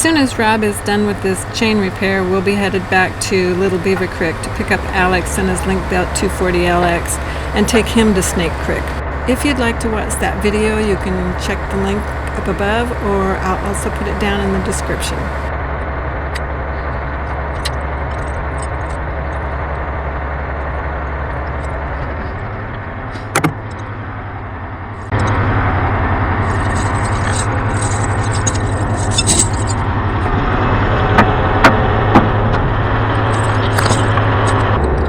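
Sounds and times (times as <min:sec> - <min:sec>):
diesel truck idling: 0:00.0 - 0:15.5, 0:22.6 - 0:35.0
chain links clinking: 0:26.5 - 0:29.8.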